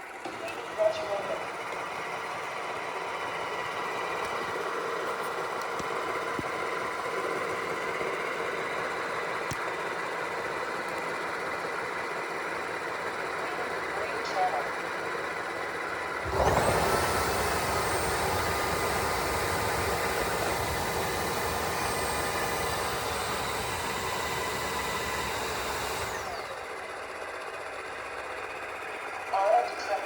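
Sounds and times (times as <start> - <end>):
vacuum motor whine: 12.8 - 27.6.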